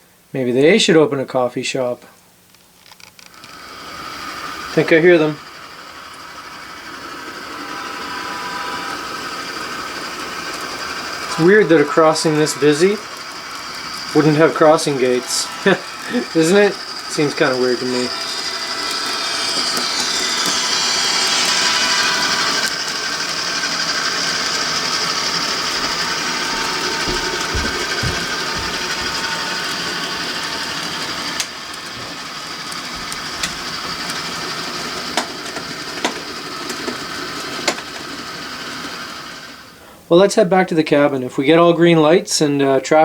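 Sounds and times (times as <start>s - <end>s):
model train motor whirring: 2.5s - 39.8s
soft thumps: 25.8s - 29.5s.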